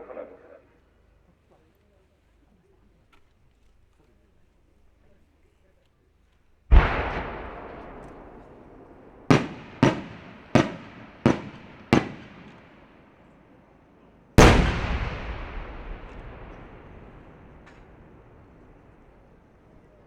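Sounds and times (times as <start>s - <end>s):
sharp firework bangs: 6.7s - 12.8s, 14.4s - 19.3s
firework shells booming: 6.7s - 13.1s, 14.4s - 19.6s.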